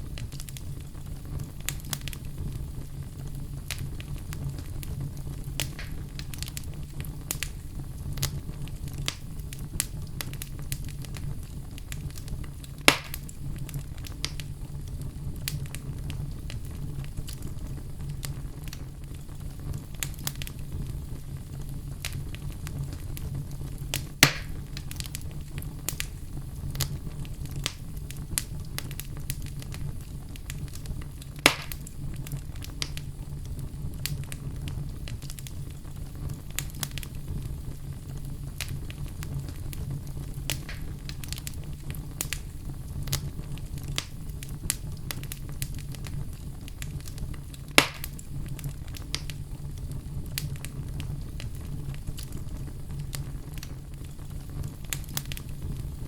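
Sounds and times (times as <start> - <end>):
fireplace fire crackling: 0.0 - 56.0
sharp pops of fire: 0.0 - 56.0.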